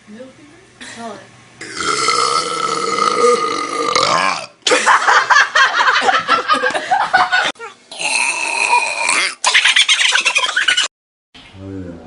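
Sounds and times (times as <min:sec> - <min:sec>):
long belch: 0:01.6 - 0:04.5, 0:07.9 - 0:09.4
hard laughter: 0:09.4 - 0:10.9.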